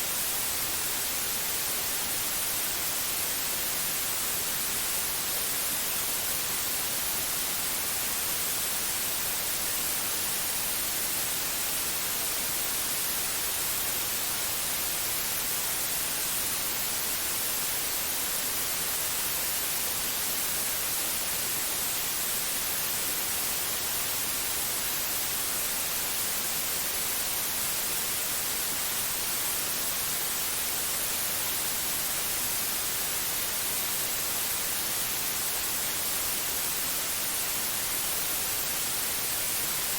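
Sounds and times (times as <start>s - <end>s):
white-noise hiss: 0.0s - 39.9s.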